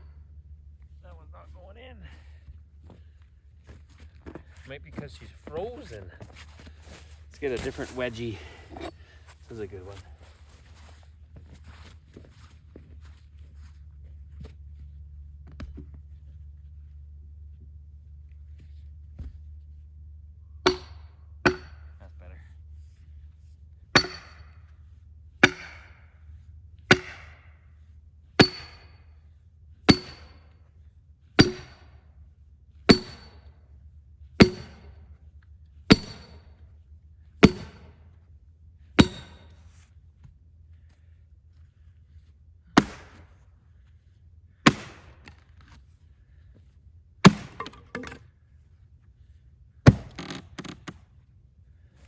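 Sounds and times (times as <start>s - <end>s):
wood crackling: 5.2s - 10.0s
hammer striking splitting wedge: 20.7s - 21.9s, 24.0s - 24.5s, 25.4s - 26.0s, 26.9s - 27.4s, 28.4s - 28.8s, 29.9s - 30.4s, 31.4s - 31.9s, 32.9s - 33.4s, 34.4s - 35.0s, 35.9s - 36.4s, 37.4s - 37.9s, 39.0s - 39.6s, 42.8s - 43.3s, 44.7s - 45.4s, 47.2s - 48.2s.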